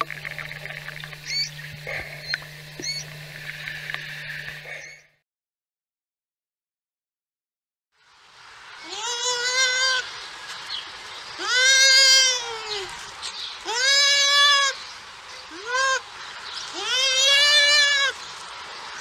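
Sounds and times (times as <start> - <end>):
animal bleating: 8.8 - 10.1, 11.4 - 13.0, 13.6 - 14.8, 15.5 - 16.0, 16.7 - 18.2.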